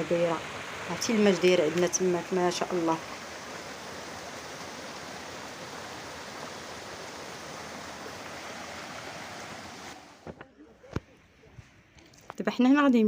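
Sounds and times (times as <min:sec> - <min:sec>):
water rushing along a stream: 0:00.0 - 0:10.3.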